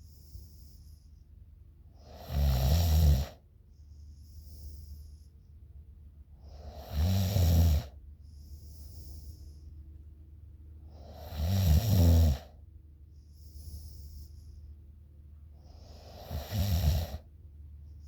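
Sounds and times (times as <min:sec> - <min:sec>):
soft hissing breaths: 0:00.0 - 0:18.0
woman snoring: 0:02.0 - 0:03.4, 0:06.5 - 0:07.9, 0:11.0 - 0:12.5, 0:15.7 - 0:17.3.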